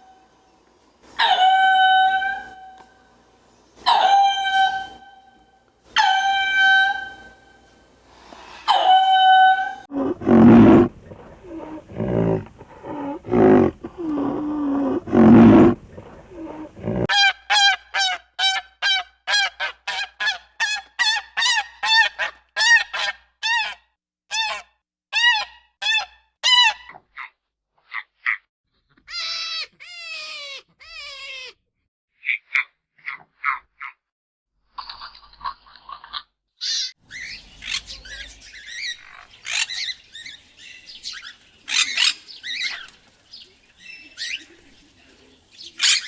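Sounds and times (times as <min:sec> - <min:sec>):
low harsh animal calls: 0:09.9 - 0:17.2, 0:37.1 - 0:46.0
geese honking: 0:37.1 - 0:46.0.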